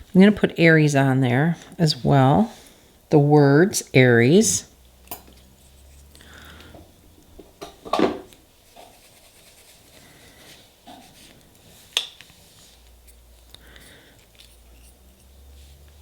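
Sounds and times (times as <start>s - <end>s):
soft rubbing and scratching: 8.6s - 16.0s.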